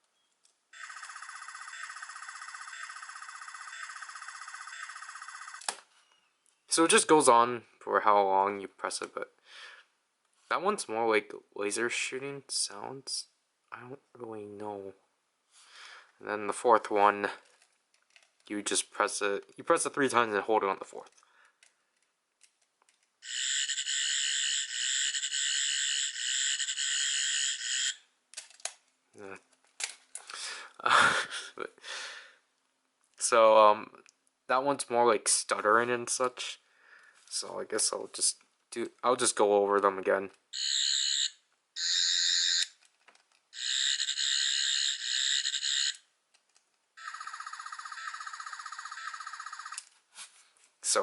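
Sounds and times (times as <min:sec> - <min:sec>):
warbling electronic toy sound: 0:00.8 - 0:05.6, 0:23.2 - 0:28.0, 0:40.6 - 0:42.7, 0:43.6 - 0:46.0, 0:47.0 - 0:49.8.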